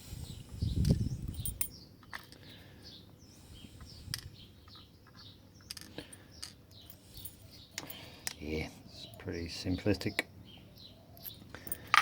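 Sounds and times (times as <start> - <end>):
small bird chirping: 0.1 - 11.8
metal padlock parts clinking: 0.8 - 2.6, 4.1 - 8.4, 11.1 - 12.0.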